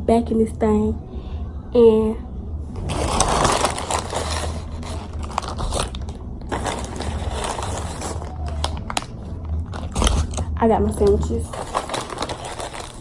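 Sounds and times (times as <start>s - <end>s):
low hum: 0.0s - 13.0s
paper bag rustling: 2.8s - 13.0s.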